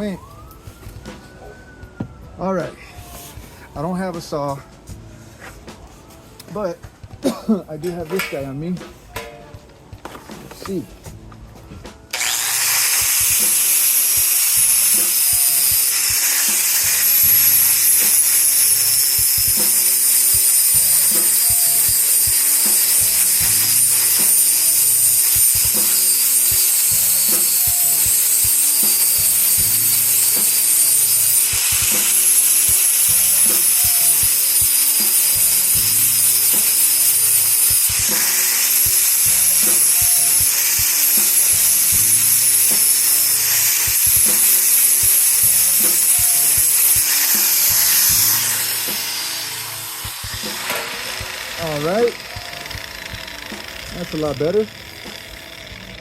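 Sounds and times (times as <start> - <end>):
hand saw rasping through wood: 12.1 - 56.0.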